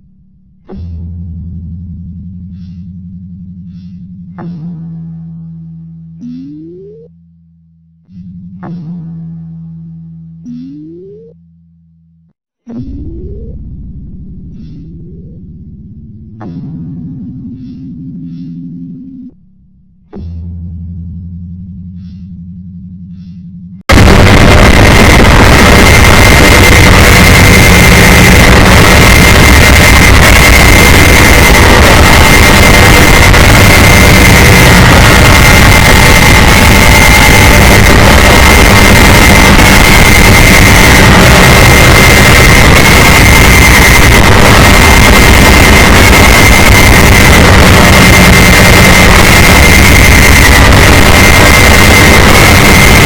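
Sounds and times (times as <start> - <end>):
harsh distorted alert alarm: 23.8 - 53.0.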